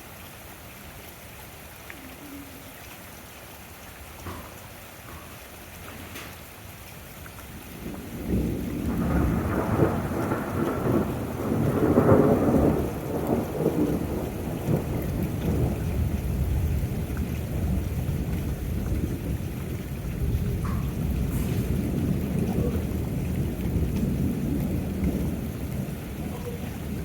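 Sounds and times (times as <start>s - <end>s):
steady rain: 0.0s - 27.0s
thunder rumbling: 7.6s - 27.0s.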